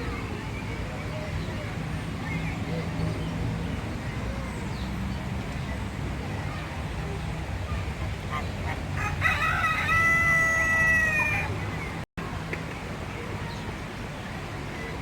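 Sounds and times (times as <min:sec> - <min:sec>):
rooster crowing: 0:09.0 - 0:11.5.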